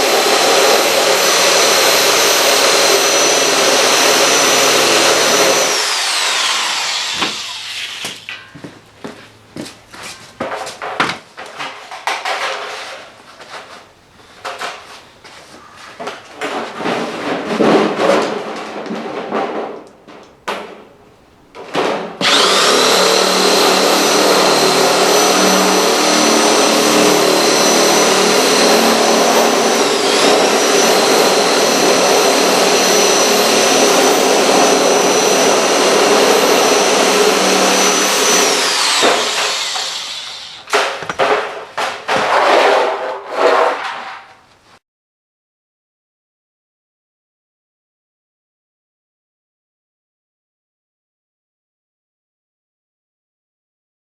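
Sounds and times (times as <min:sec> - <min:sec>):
power shear motor whine: 0:00.0 - 0:08.5, 0:22.2 - 0:40.7
sheet metal clattering and scraping: 0:16.0 - 0:20.9, 0:40.7 - 0:44.4.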